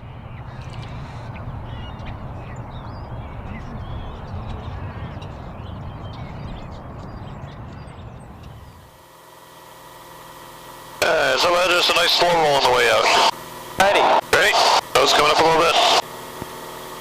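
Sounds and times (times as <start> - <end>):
birds chirping: 0.0 - 9.0.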